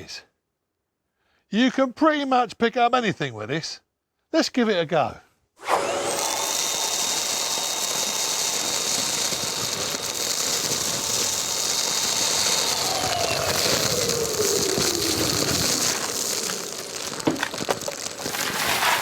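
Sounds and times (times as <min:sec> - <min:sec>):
wet and dry vacuum running: 0:05.6 - 0:18.7.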